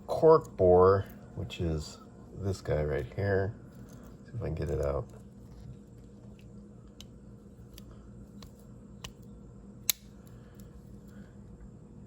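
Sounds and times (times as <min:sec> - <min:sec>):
blade snapping open: 0:06.9 - 0:10.7.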